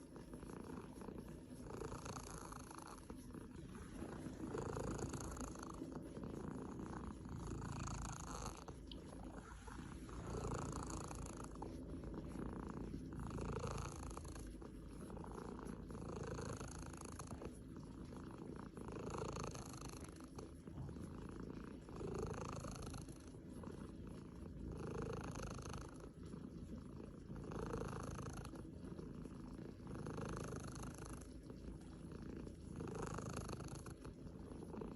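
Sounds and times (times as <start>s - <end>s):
cat purring: 0.0s - 34.9s.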